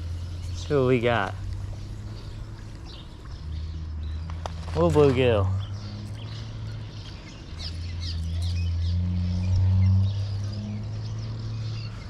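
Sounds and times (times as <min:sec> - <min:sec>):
steady low hum: 0:00.0 - 0:04.7
small birds chirping: 0:00.0 - 0:12.0.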